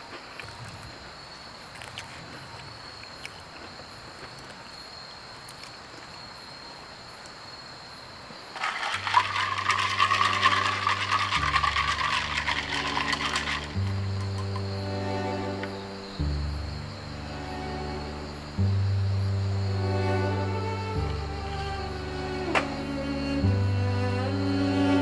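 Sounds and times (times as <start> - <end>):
high insect trill: 3.8 - 25.0
dense crackle of clicks: 8.6 - 14.6
background music with low bass: 11.4 - 25.0.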